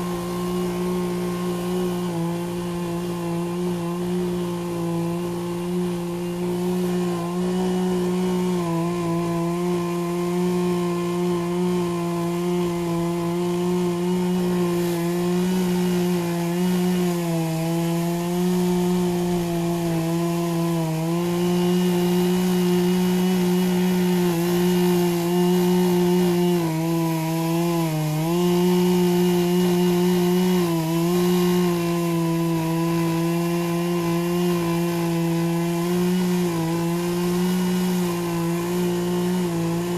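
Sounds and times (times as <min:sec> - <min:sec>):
chainsaw cutting into stump: 0:00.0 - 0:39.9.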